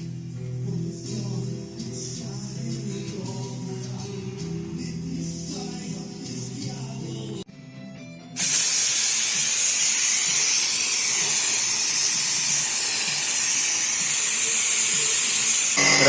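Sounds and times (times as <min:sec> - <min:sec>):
background music: 0:00.0 - 0:08.4
loud steady hiss: 0:08.4 - 0:16.0.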